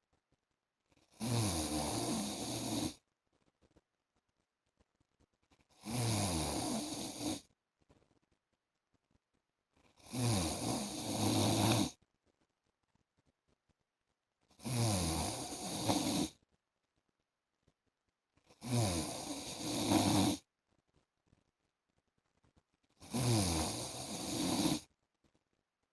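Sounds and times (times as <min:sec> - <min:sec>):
man snoring: 0:01.1 - 0:03.0, 0:05.8 - 0:07.4, 0:10.0 - 0:12.0, 0:14.6 - 0:16.3, 0:18.6 - 0:20.4, 0:23.0 - 0:24.9.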